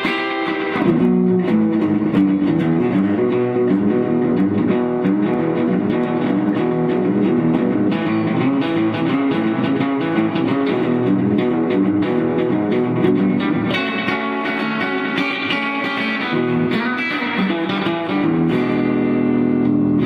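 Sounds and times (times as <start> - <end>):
electric guitar riff: 0.0 - 20.0.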